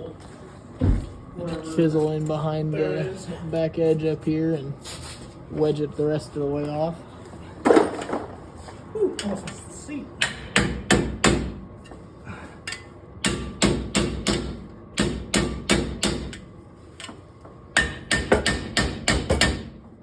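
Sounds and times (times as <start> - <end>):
hammer striking steel chisel: 10.2 - 11.5, 13.2 - 16.4, 17.8 - 19.7.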